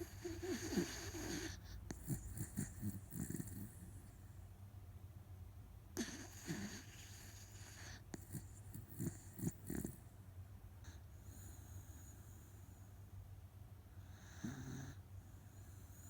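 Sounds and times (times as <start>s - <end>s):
dog snorting: 0.0s - 4.1s, 6.0s - 10.1s
dog snoring: 0.0s - 4.2s, 6.0s - 10.1s, 14.0s - 16.0s.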